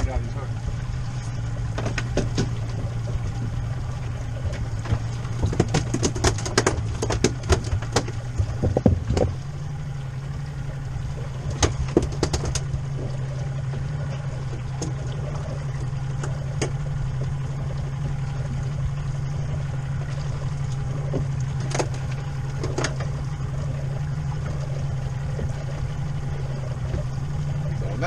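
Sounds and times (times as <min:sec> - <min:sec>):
boat engine idling: 0:00.0 - 0:28.0
sharp knocks and clicks: 0:01.7 - 0:03.5, 0:04.4 - 0:09.4, 0:11.4 - 0:12.8, 0:15.8 - 0:17.3, 0:20.7 - 0:23.1.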